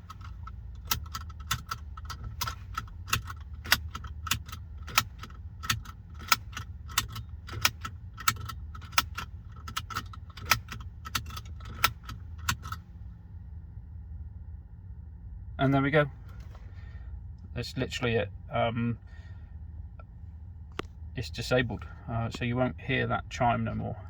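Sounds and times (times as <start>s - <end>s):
seat belt buckle clicking: 0.0s - 12.8s
low steady hum: 0.0s - 24.0s.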